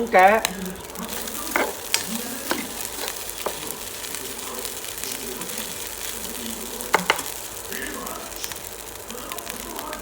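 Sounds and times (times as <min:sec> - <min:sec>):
rice sizzling in a hot pan: 0:00.0 - 0:10.0
spatula scraping a pan: 0:01.0 - 0:08.4.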